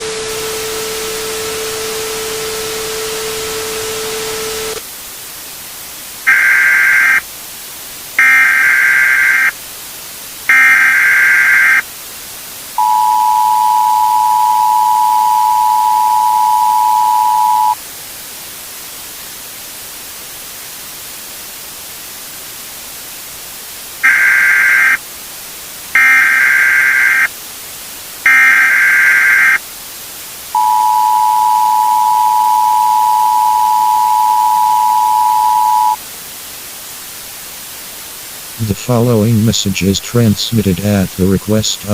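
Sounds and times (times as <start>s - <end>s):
static hiss: 0.0s - 41.9s
data bursts: 6.3s - 7.2s, 8.2s - 9.5s, 10.5s - 11.8s, 12.8s - 17.8s, 24.0s - 25.0s, 26.0s - 27.3s, 28.3s - 29.6s, 30.6s - 36.0s
two-tone attention signal: 10.5s - 11.8s, 12.8s - 17.8s, 26.0s - 27.3s, 28.3s - 29.6s, 30.6s - 36.0s
steady low tone: 12.8s - 17.8s, 30.6s - 36.0s.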